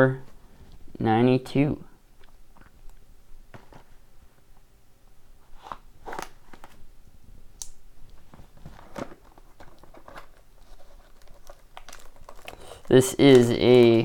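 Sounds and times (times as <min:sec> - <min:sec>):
packaging crackling and tearing: 0:05.6 - 0:06.8, 0:08.6 - 0:14.0.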